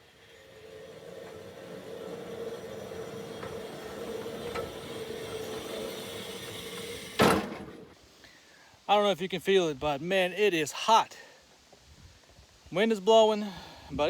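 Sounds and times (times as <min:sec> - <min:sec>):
engine humming: 0:00.0 - 0:08.0.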